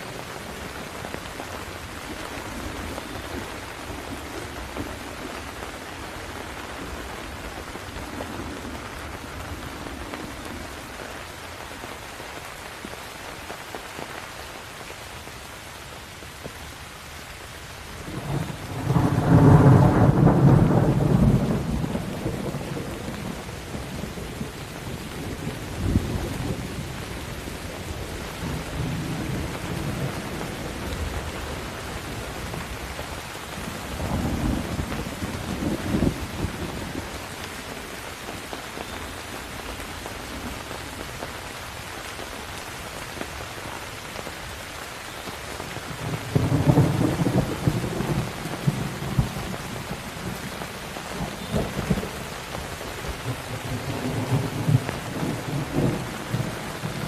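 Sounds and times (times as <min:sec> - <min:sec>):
heavy rain: 0:00.0 - 0:57.0
thunder rolling: 0:18.1 - 0:26.9.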